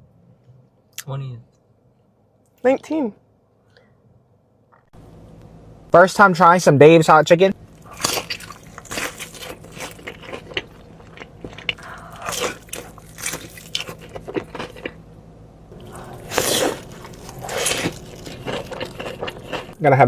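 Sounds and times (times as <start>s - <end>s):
crunchy chewing: 7.7s - 15.0s, 15.7s - 19.8s.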